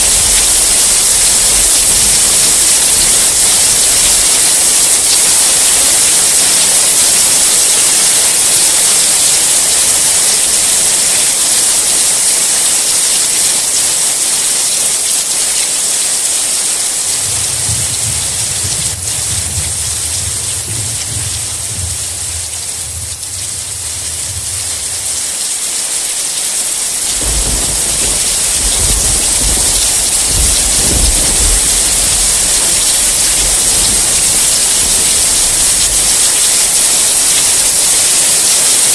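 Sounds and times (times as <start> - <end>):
low rolling thunder: 0.0 - 11.2, 17.2 - 25.4, 26.8 - 38.9
heavy rain hissing: 0.0 - 38.9.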